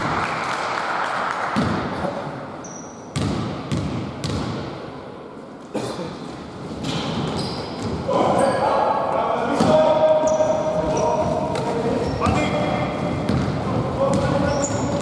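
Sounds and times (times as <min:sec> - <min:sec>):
basketball bouncing on wooden floor: 0:03.1 - 0:04.6, 0:13.2 - 0:15.0.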